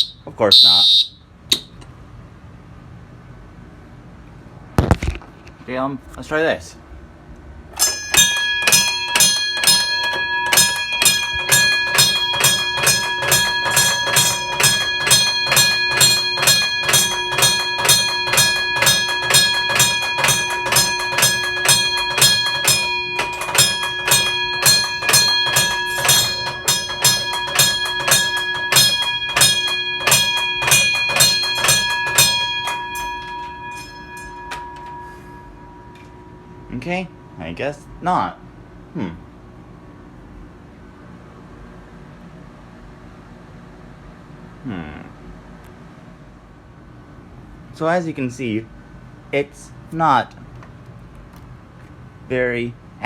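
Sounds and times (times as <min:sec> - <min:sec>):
fire alarm bell ringing: 0:00.0 - 0:01.2, 0:07.8 - 0:37.4.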